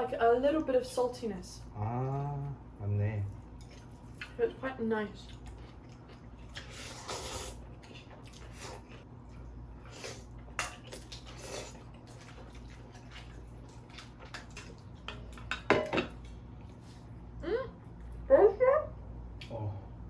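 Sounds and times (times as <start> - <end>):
low steady hum: 0.0 - 20.0
slurping and chewing noodles: 5.3 - 15.3.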